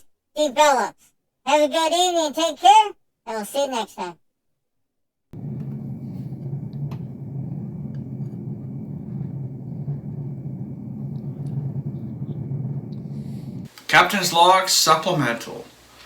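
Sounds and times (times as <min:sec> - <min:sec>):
low rumbling hum: 0:05.4 - 0:13.7
faint clicks: 0:05.4 - 0:13.9.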